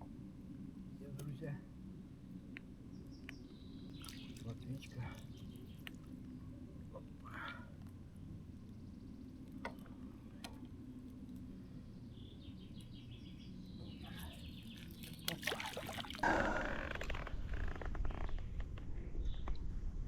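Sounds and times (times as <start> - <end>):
birds chirping: 1.0 - 17.0
low wind rumble: 16.2 - 20.0.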